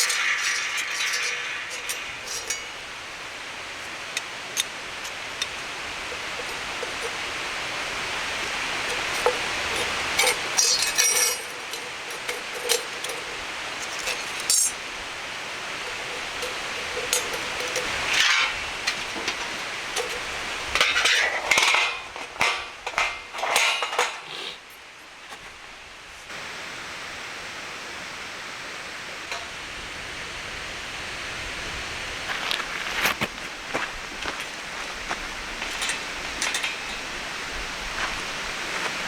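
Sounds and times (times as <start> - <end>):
metal cookware clinking: 0.0 - 14.9, 15.8 - 24.5, 35.6 - 37.2
steady quiet hiss: 0.0 - 39.0.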